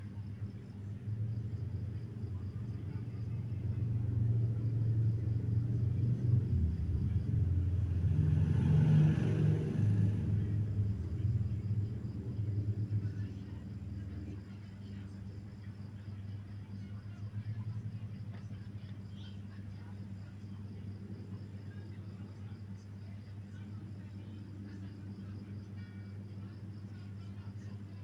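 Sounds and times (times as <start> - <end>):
motorcycle passing by: 1.6 - 13.3.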